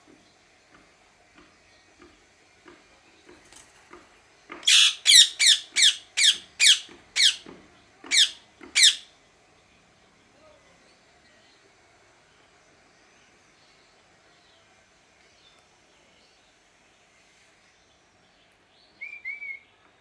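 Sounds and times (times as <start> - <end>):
parakeet screeching: 4.6 - 7.4, 8.1 - 9.1.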